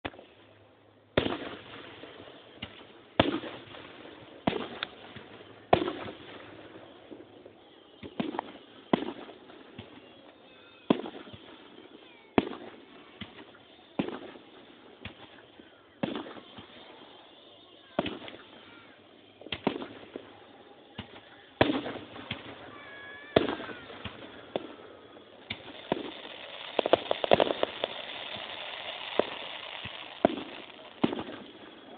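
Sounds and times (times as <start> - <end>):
fireworks booming and crackling: 0.0 - 31.9
firework shells bursting: 18.0 - 31.9
crackling rumble: 23.4 - 31.9.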